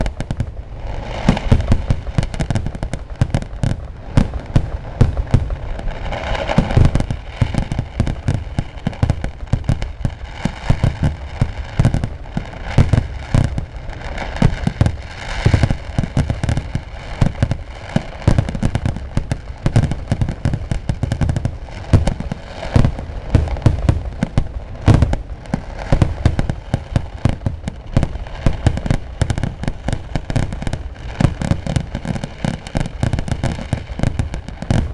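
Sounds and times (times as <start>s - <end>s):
firecracker bangs and booms: 0.0s - 34.9s.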